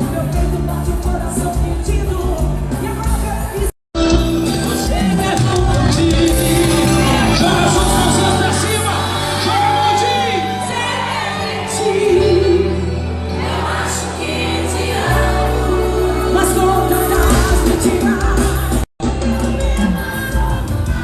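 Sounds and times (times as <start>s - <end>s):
forro band music: 0.0s - 21.0s
steady bass line: 4.0s - 10.3s
person singing: 4.0s - 21.0s.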